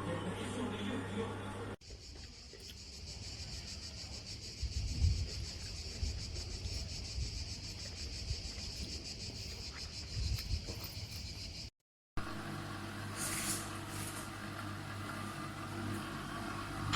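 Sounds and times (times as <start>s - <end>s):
ice cream maker buzzing: 12.2s - 16.9s.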